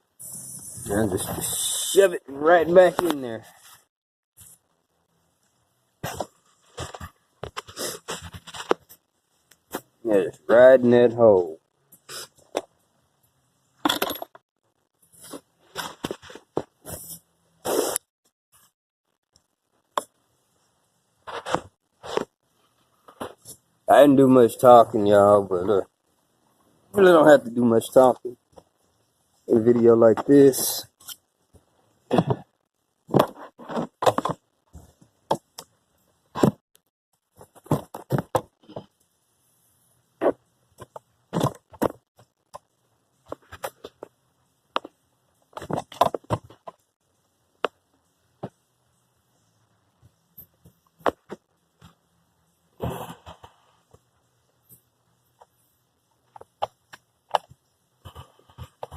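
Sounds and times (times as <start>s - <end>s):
tools and parts knocking and scraping: 13.8s - 14.4s.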